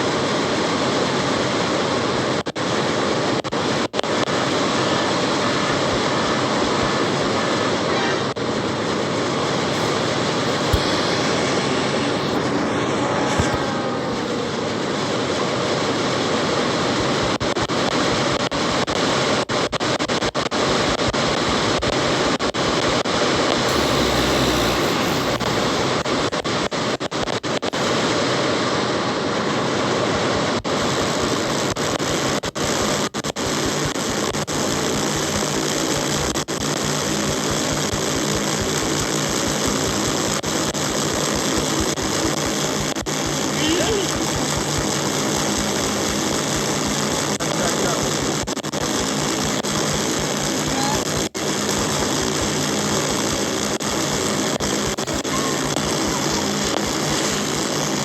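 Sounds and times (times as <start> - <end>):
loud engine noise: 8.6 - 16.1, 23.6 - 26.4.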